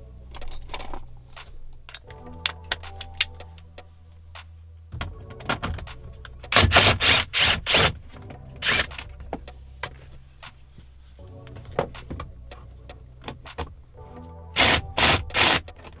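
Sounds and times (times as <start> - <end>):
socket wrench rasping: 14.6 - 15.9.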